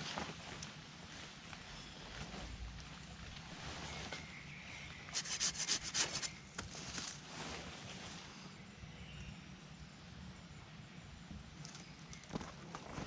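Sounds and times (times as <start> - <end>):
scraping rubbing strokes: 5.1 - 8.2.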